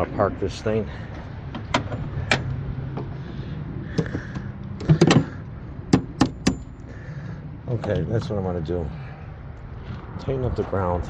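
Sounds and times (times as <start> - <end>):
sharp clicks and knocks: 4.0 - 6.7.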